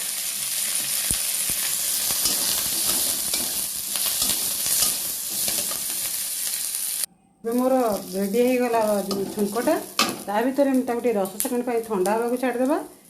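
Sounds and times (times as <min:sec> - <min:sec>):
spices sizzling in hot oil: 0:00.0 - 0:13.0
stirring in a pan: 0:01.6 - 0:06.5.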